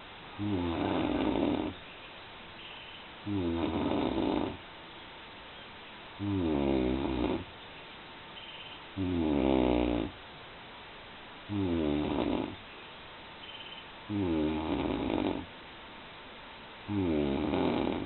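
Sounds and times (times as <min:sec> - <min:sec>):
person snoring heavily: 0:00.4 - 0:01.8, 0:03.2 - 0:04.6, 0:06.2 - 0:07.5, 0:09.0 - 0:10.2, 0:11.5 - 0:12.6, 0:14.1 - 0:15.5, 0:16.9 - 0:18.0.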